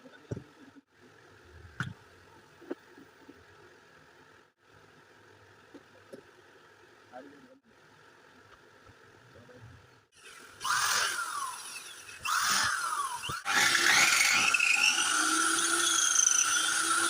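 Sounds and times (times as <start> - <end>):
wall chaser motor whining: 10.2 - 17.0.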